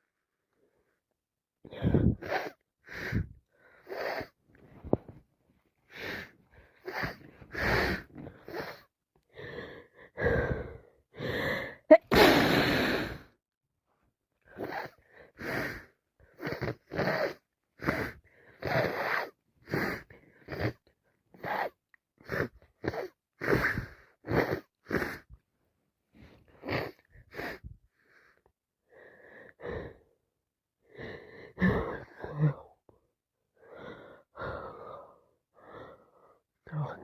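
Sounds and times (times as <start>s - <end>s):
person sniffling through congested nose: 1.8s - 4.4s, 5.9s - 8.9s, 12.0s - 13.3s, 14.6s - 20.8s, 21.4s - 25.3s, 26.2s - 28.4s.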